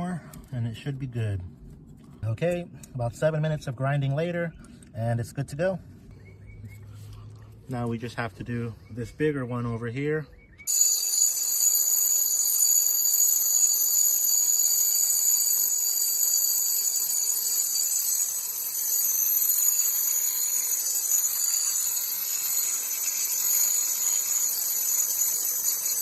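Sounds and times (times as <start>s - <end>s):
angle grinder grinding concrete: 10.7s - 26.0s.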